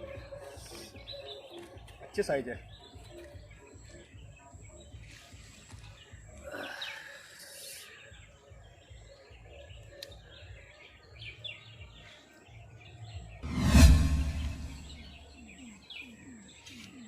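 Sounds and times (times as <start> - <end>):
sudden loud noise: 13.4 - 15.3.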